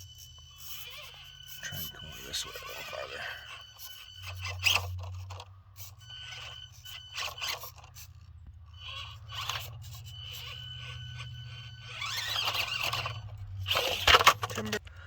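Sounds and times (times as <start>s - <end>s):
small electric motor whining: 0.0s - 15.0s
tires scraping over rock: 4.2s - 15.0s.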